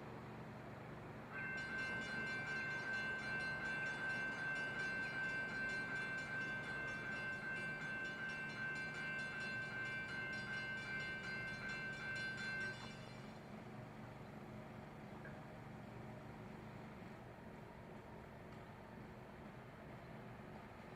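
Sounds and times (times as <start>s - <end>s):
train high-pitched tone: 1.2s - 14.4s.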